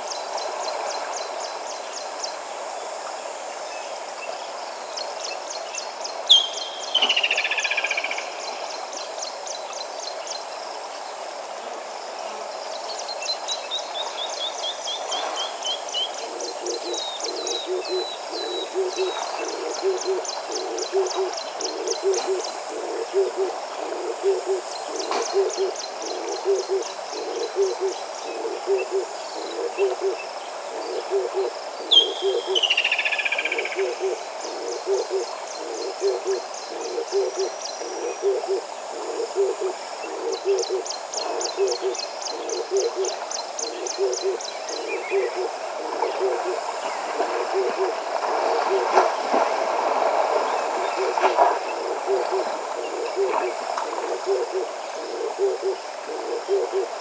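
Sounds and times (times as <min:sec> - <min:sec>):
wild bird calls: 0:15.4 - 0:49.1, 0:50.4 - 0:57.0
river water rushing: 0:46.5 - 0:54.8.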